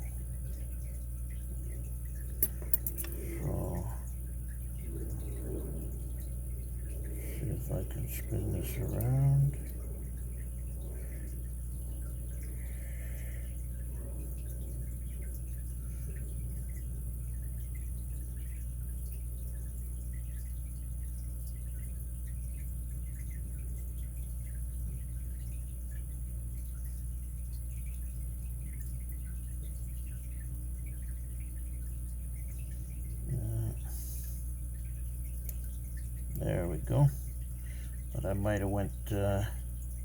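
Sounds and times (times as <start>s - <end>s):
low electrical hum and hiss: 0.0s - 40.0s
lock picks clicking and scraping: 2.4s - 3.2s.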